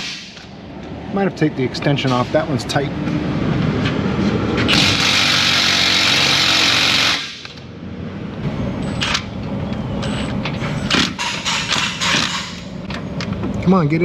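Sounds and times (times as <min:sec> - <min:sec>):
impact wrench hammering: 0:10.9 - 0:12.7.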